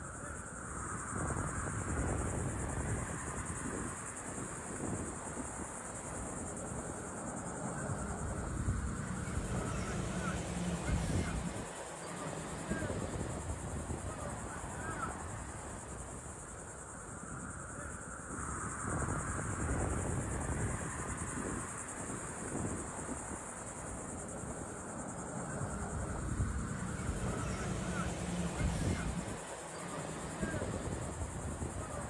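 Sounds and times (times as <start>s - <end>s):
high-pitched insect drone: 0.0s - 32.0s.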